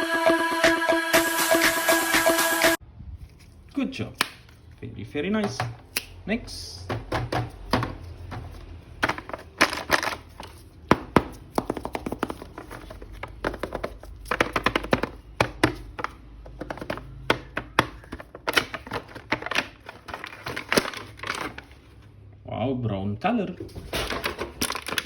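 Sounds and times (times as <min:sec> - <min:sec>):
plastic toy packaging clicks and crackles: 0:09.0 - 0:10.7, 0:12.0 - 0:22.0, 0:24.0 - 0:25.0.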